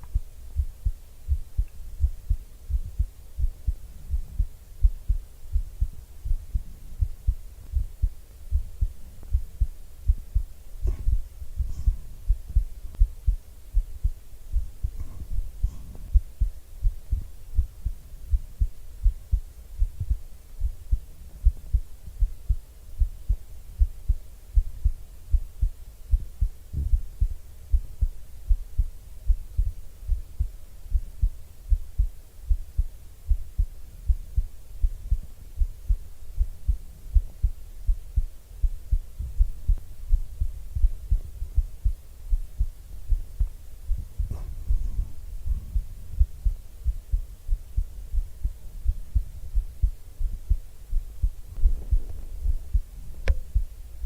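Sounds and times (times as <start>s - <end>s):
heartbeat thumps: 0.0s - 54.0s
faint rustles: 1.4s - 22.4s, 38.9s - 54.0s.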